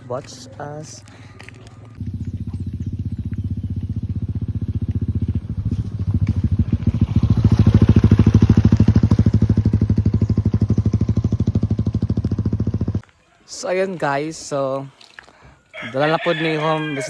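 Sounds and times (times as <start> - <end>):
motorcycle engine puttering: 1.9 - 13.0.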